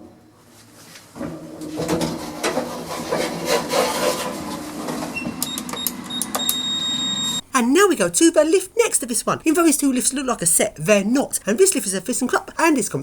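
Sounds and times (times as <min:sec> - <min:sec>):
lift mechanical rumble: 0:00.0 - 0:07.4
thin high whine: 0:00.0 - 0:07.5.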